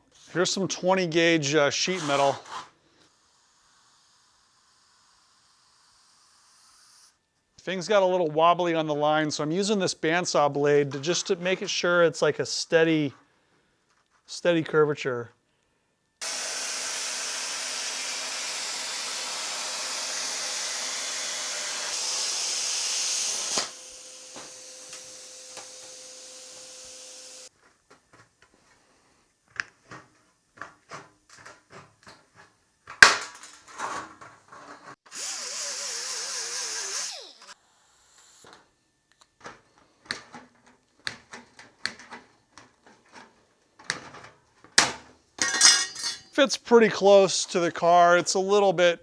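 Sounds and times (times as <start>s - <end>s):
power tool cutting sheet steel: 1.8s - 7.2s, 16.2s - 27.5s, 35.1s - 38.6s.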